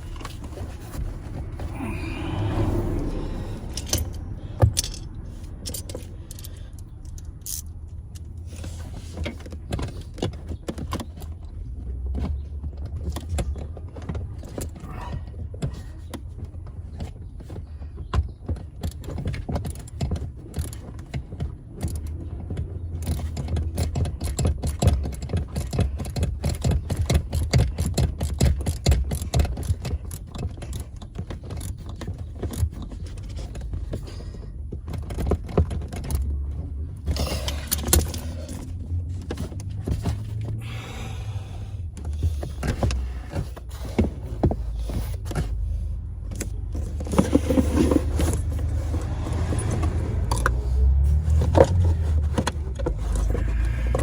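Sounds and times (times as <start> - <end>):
metal tools clicking and rattling: 2.8 - 11.3, 37.0 - 40.2.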